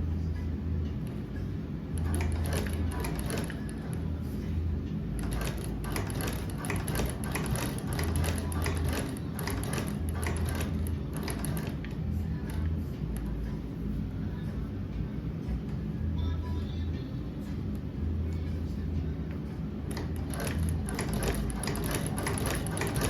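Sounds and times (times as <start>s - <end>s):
sewing machine stitching leather: 2.0s - 4.0s, 5.2s - 12.7s, 19.9s - 23.0s.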